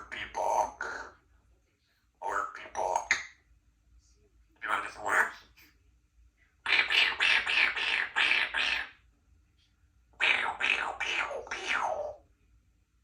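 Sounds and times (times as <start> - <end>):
parrot making mouth sounds: 0.0 - 1.2, 2.2 - 3.4, 4.6 - 5.6, 6.6 - 9.0, 10.2 - 12.2.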